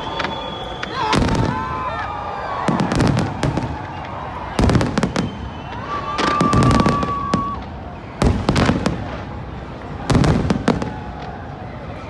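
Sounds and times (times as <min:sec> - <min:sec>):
high whistle: 0:00.0 - 0:01.9, 0:04.9 - 0:07.5
fireworks bursting: 0:00.0 - 0:12.0.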